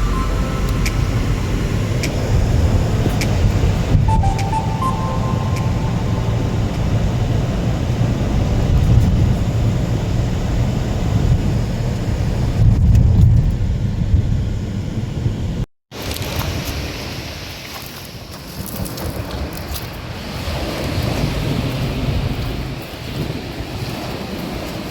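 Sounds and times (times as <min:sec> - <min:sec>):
car engine and tyres rumbling: 0:00.0 - 0:04.0, 0:06.8 - 0:15.6.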